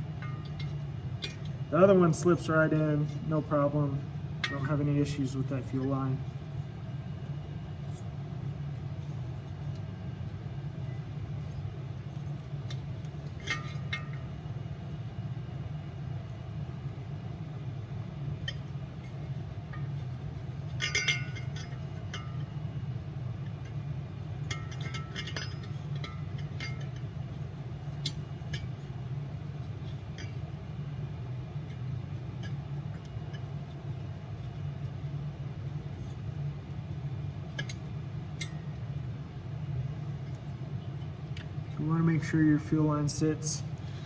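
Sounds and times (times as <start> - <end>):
steady low hum: 0.0 - 44.0
metal parts clinking: 20.8 - 22.2.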